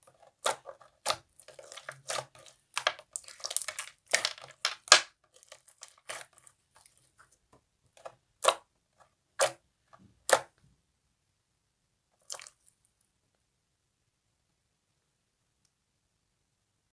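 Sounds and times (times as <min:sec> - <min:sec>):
crackling slime pops: 0:00.4 - 0:05.2.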